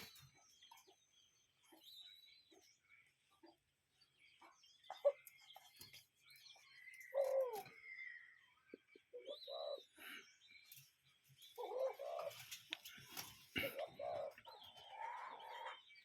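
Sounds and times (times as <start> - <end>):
small birds chirping: 0.0 - 16.0
cuckoo calling: 6.6 - 10.8, 11.5 - 16.0.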